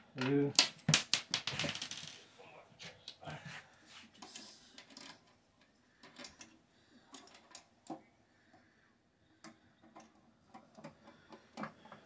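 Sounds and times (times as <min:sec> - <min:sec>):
clicks and knocks of handling parts: 0:04.2 - 0:08.6, 0:09.4 - 0:12.0.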